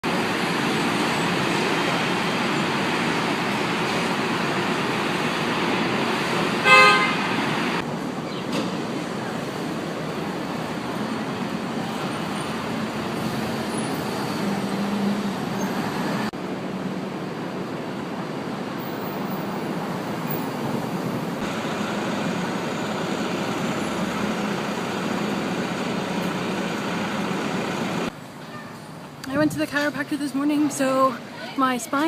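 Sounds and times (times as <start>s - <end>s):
city traffic noise: 0.0s - 32.0s
car horn: 6.6s - 7.4s.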